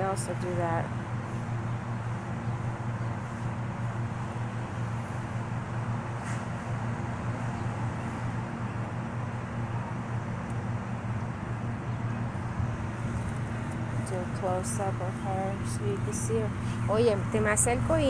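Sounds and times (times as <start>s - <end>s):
motor humming: 12.4s - 18.0s.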